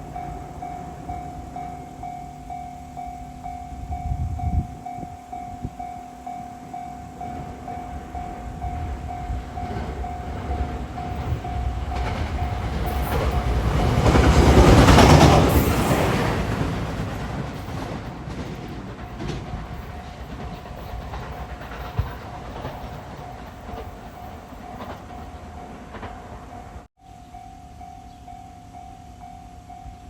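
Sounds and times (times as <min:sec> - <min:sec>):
level-crossing alarm ringing: 0:00.0 - 0:16.6
train passing on rails: 0:00.0 - 0:30.0.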